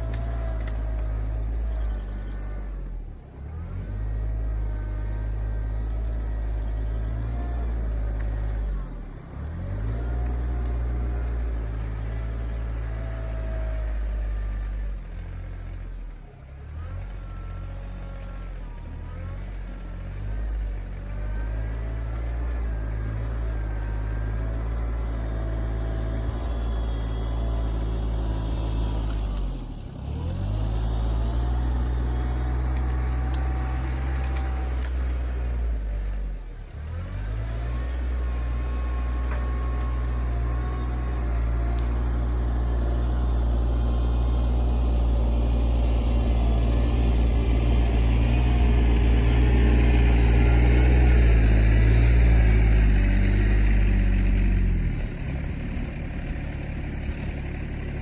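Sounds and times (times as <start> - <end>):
tractor engine under load: 0.0 - 58.0.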